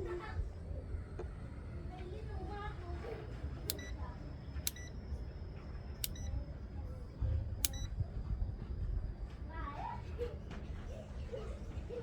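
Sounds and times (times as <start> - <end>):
low background rumble: 0.0 - 12.0
multimeter short sharp beeps: 6.0 - 6.3, 7.6 - 7.9.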